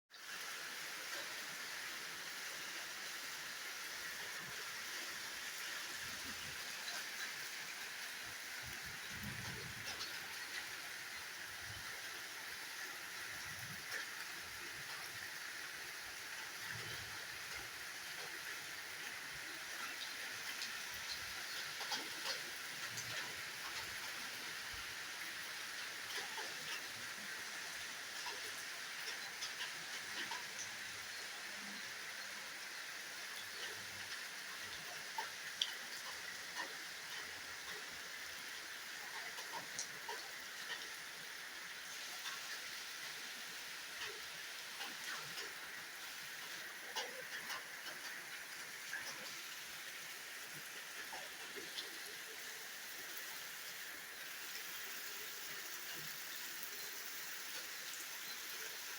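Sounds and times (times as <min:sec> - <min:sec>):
faint ticks: 0:16.6 - 0:31.8, 0:33.2 - 0:41.0, 0:42.1 - 0:42.9, 0:44.0 - 0:52.2.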